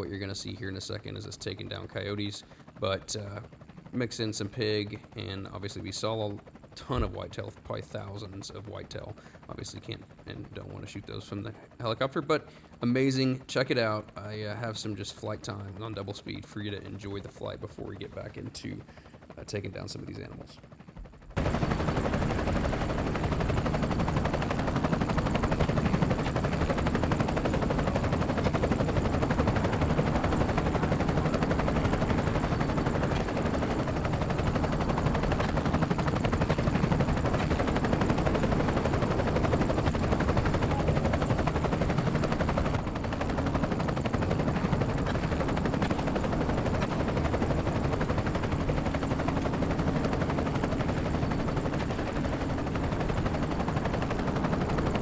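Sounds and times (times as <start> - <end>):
helicopter rotor chop: 0.0 - 55.0.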